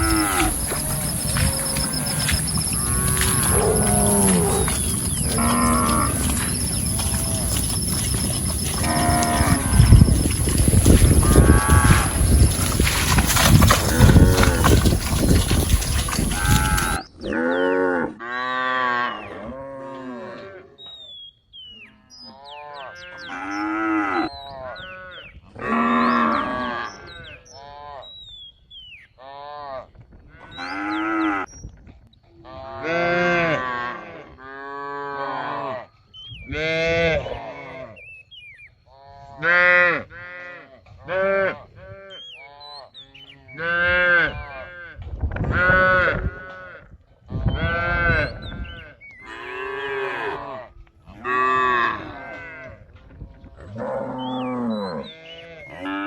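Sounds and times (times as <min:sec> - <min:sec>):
cattle mooing: 0:00.0 - 0:20.5.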